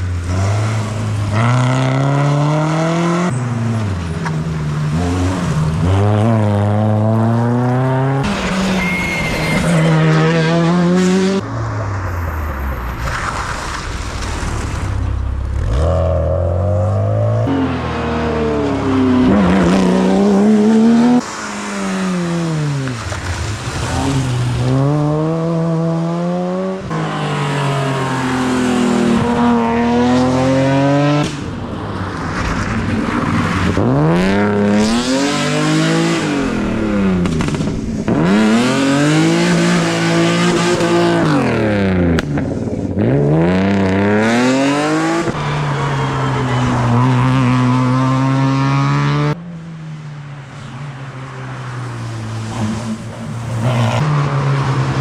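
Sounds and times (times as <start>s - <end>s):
rally car engines accelerating: 0.2s - 13.8s, 15.5s - 49.4s
tyre squeal: 8.2s - 10.7s.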